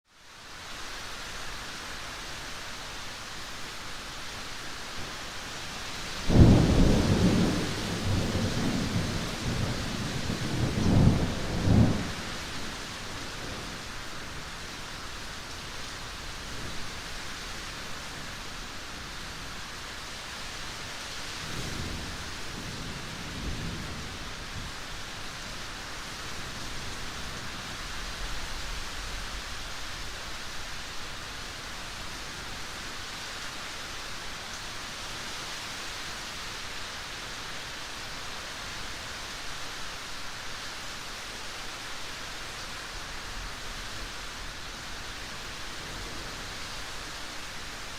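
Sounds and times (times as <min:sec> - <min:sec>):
steady rain: 0:00.0 - 0:47.9
thunder rolling: 0:06.3 - 0:12.2.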